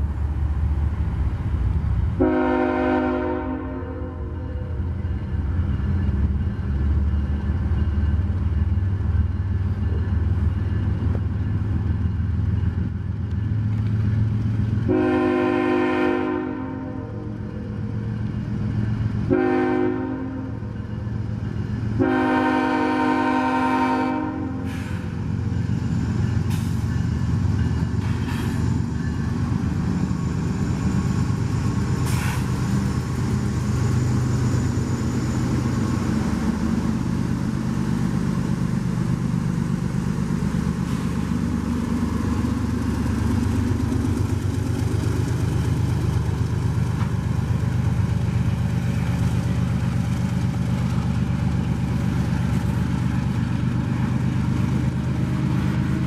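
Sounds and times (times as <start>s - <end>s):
train rumbling: 0.0s - 56.0s
train horn blasts: 2.2s - 4.4s, 14.9s - 17.4s, 19.3s - 20.6s, 22.0s - 24.8s.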